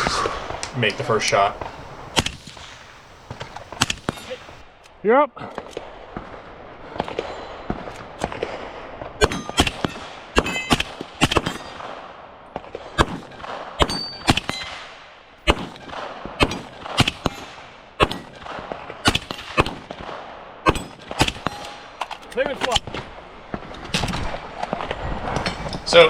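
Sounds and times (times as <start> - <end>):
gunshots: 0.0 - 4.6.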